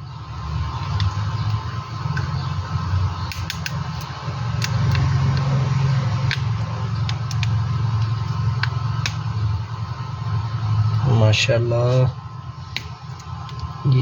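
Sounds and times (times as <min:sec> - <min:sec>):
low mechanical hum: 0:00.0 - 0:14.0
small tools clicking and tapping: 0:03.3 - 0:05.5, 0:06.2 - 0:09.2.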